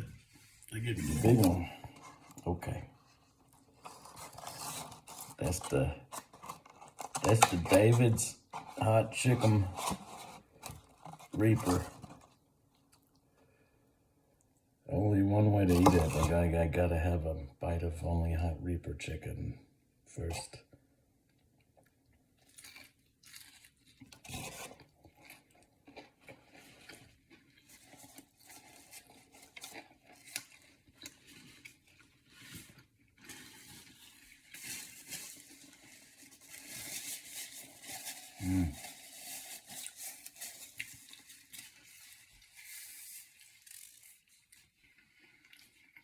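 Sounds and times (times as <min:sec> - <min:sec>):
crunchy chewing of fried chicken: 0:21.3 - 0:46.0.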